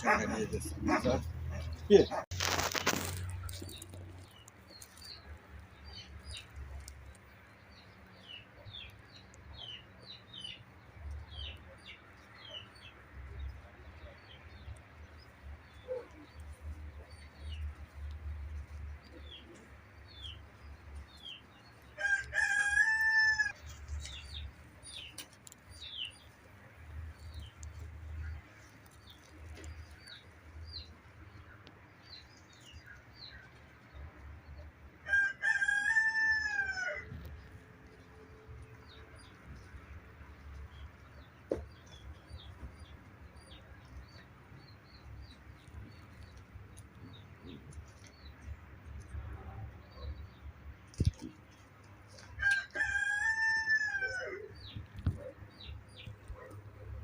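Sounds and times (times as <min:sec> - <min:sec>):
small birds chirping: 0:00.0 - 0:34.9, 0:35.6 - 0:53.5, 0:54.4 - 0:57.0
rooster crowing: 0:22.0 - 0:23.6, 0:35.1 - 0:37.1, 0:52.4 - 0:54.5.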